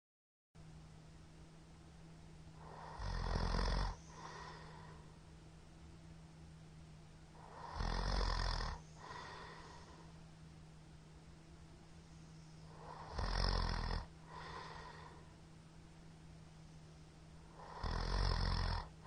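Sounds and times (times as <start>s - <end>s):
steady low hum: 0.6s - 19.0s
man snoring loudly: 2.6s - 5.0s, 7.4s - 10.0s, 12.7s - 15.2s, 17.5s - 19.0s.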